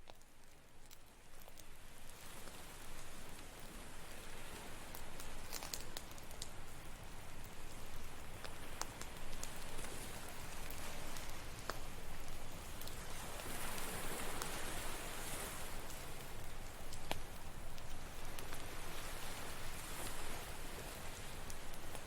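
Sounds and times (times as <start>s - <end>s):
campfire crackling and popping: 0.0s - 22.0s
ocean surf: 8.7s - 16.8s, 18.0s - 22.0s.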